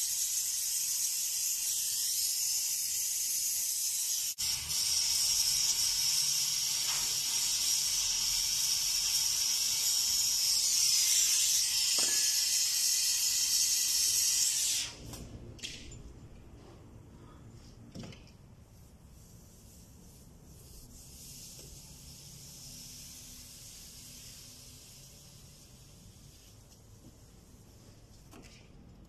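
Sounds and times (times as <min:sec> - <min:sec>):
torch flame hissing: 0:00.3 - 0:15.0.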